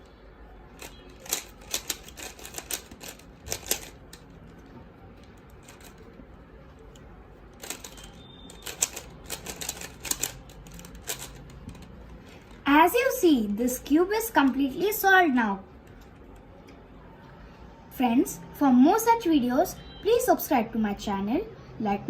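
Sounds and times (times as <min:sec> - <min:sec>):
puzzle cube layers clicking: 0:00.8 - 0:04.4, 0:06.8 - 0:11.9.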